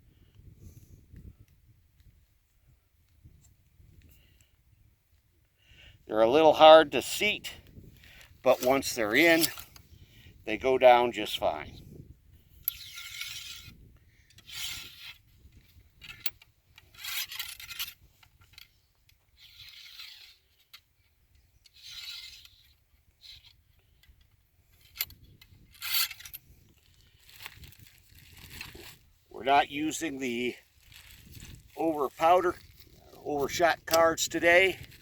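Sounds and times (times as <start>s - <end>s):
ramrod rasping in gun barrel: 8.0s - 9.9s, 12.5s - 35.0s.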